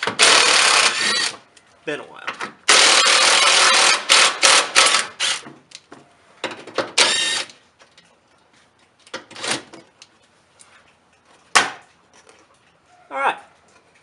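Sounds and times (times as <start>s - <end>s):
power tool whirring in bursts: 0.1s - 1.4s, 2.7s - 5.4s, 7.0s - 7.5s.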